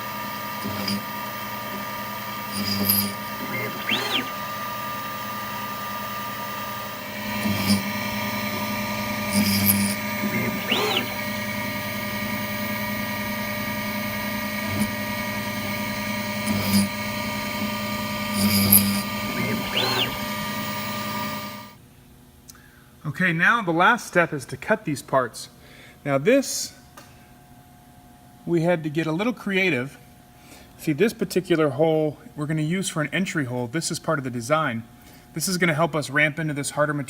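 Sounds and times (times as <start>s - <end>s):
drill bit plunging bursts: 0.0s - 21.8s
router spindle whine: 0.0s - 21.8s.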